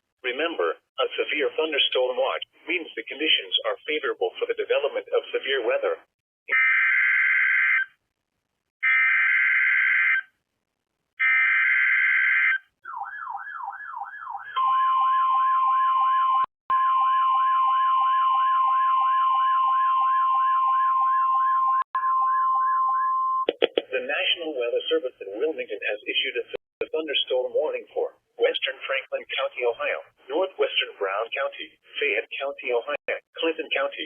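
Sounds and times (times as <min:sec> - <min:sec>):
fast warbling alarm: 0:06.5 - 0:08.0, 0:08.8 - 0:10.3, 0:11.2 - 0:23.5
steady warning alarm tone: 0:11.2 - 0:23.5.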